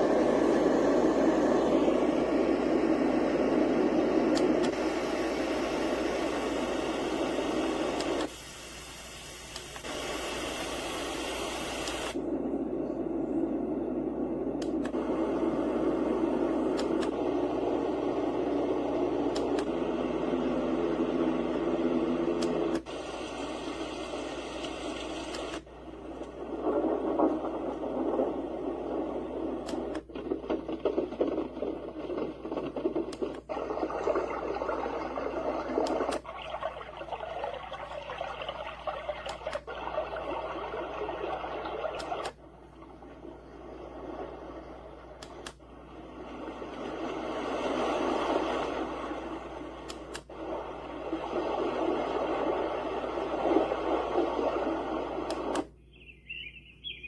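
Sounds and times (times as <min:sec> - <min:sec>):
white noise machine rushing: 0:00.0 - 0:08.6
sleep machine crackly noise: 0:00.0 - 0:55.9
click: 0:04.3 - 0:04.8, 0:07.9 - 0:08.3, 0:09.5 - 0:09.9, 0:11.7 - 0:12.2, 0:14.6 - 0:15.0, 0:16.7 - 0:17.2, 0:19.3 - 0:19.7, 0:22.3 - 0:22.9, 0:24.5 - 0:26.4, 0:29.6 - 0:30.1, 0:45.2 - 0:45.6, 0:49.8 - 0:50.3, 0:55.2 - 0:55.7.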